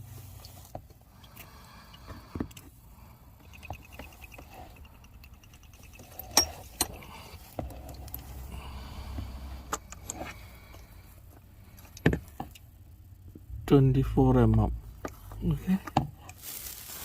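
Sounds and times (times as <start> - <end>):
hand tools clinking: 3.4 - 8.3.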